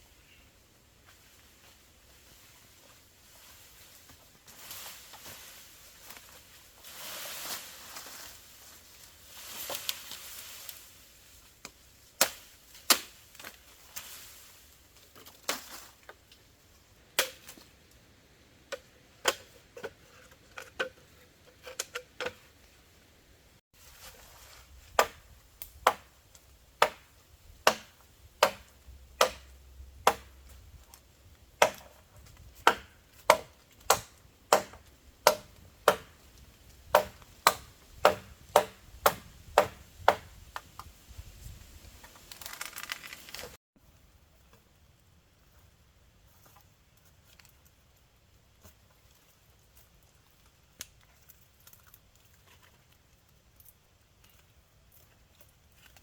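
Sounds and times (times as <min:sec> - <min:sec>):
rustling: 0:01.0 - 0:11.8, 0:23.8 - 0:25.3, 0:40.6 - 0:44.7
blade chopping strikes: 0:26.8 - 0:30.4, 0:32.6 - 0:36.2, 0:36.9 - 0:40.3.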